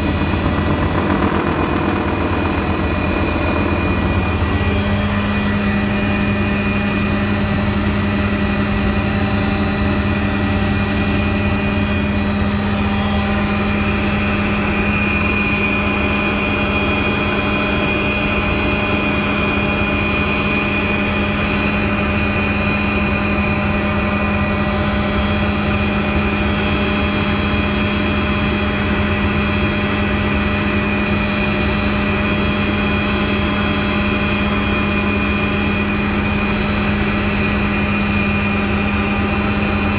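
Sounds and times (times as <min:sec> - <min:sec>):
helicopter engine and rotor: 0:00.0 - 0:39.9.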